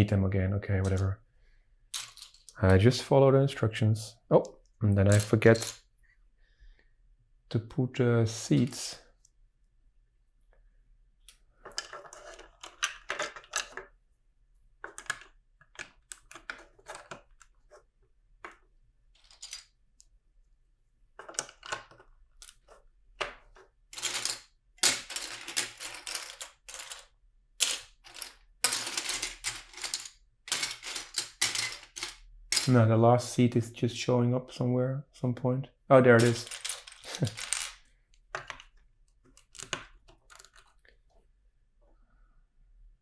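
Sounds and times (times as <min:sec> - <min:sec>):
plastic pieces clicking and rattling: 0:01.9 - 0:02.6, 0:04.9 - 0:05.8, 0:11.2 - 0:14.0, 0:14.8 - 0:17.8, 0:18.4 - 0:20.1, 0:21.2 - 0:32.8, 0:36.1 - 0:41.0.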